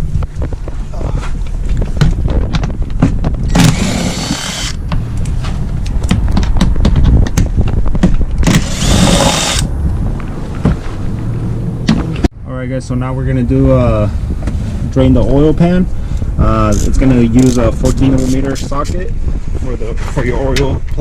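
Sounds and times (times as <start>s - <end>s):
power tool whirring: 3.5s - 4.8s, 8.4s - 9.7s.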